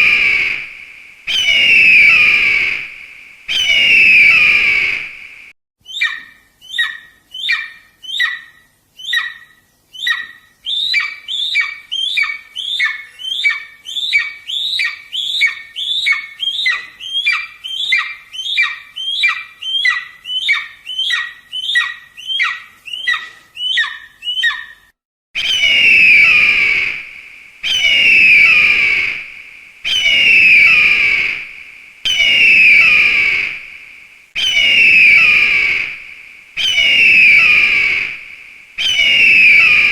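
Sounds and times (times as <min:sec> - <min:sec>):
eagle calling: 0:00.0 - 0:05.4, 0:25.4 - 0:39.9.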